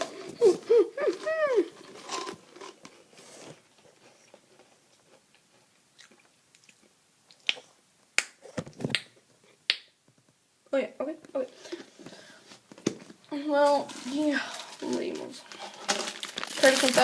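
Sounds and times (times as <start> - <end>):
faint chewing: 3.2 - 7.8
crisp crunchy bites: 15.8 - 17.0.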